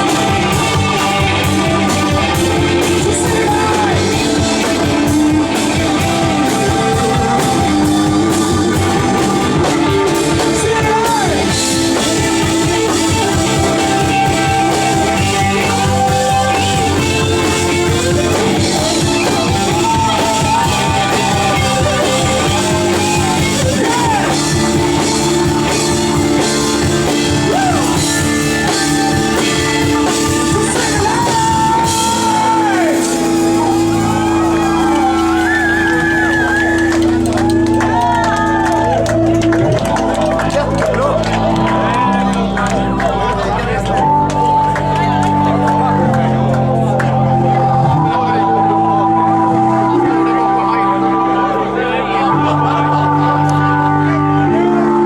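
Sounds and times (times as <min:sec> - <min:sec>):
rock band playing live: 0:00.0 - 0:55.0.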